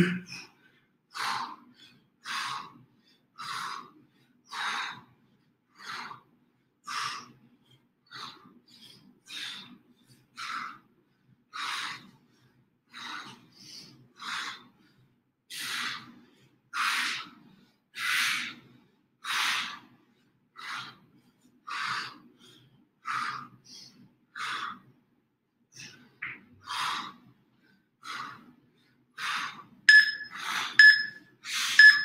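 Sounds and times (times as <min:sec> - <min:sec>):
person breathing hard: 0:00.0 - 0:25.0, 0:25.8 - 0:32.0
interval timer beeps: 0:29.9 - 0:31.2, 0:31.8 - 0:32.0.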